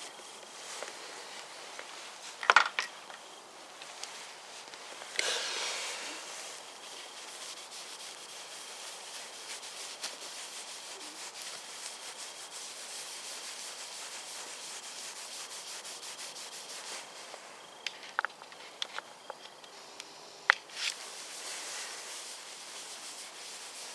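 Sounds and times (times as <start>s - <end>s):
hand rubbing car paintwork: 4.2s - 17.4s, 20.8s - 23.9s.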